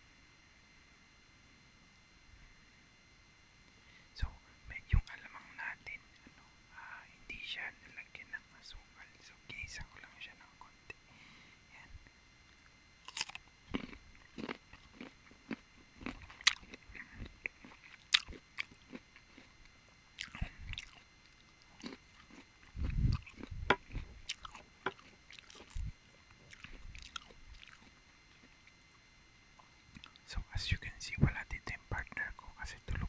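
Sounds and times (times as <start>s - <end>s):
crunching bites and chewing: 12.5s - 29.0s, 29.6s - 30.3s.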